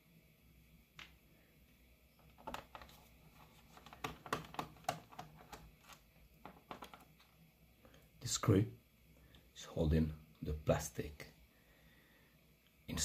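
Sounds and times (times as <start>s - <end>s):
small tools tapping plastic case: 2.2s - 3.0s, 3.7s - 7.3s.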